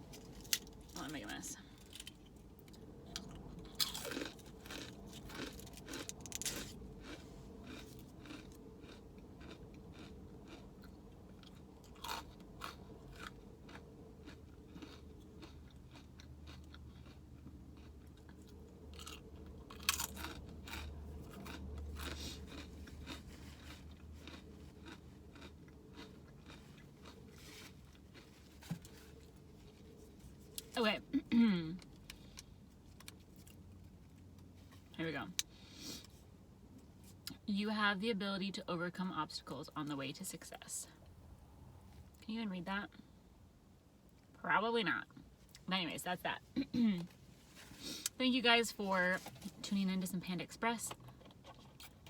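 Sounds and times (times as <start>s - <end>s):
cookie crunching while chewed: 0.0s - 30.8s.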